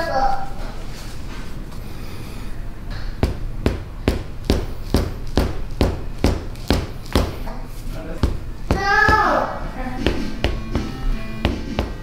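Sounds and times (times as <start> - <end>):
sharp thumps: 8.2 - 12.0.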